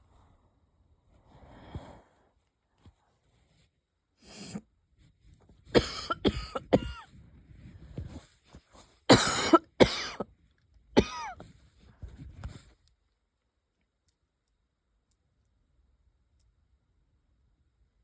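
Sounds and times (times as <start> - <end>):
person wheezy coughing: 5.8 - 7.1, 9.1 - 10.2, 11.0 - 11.4.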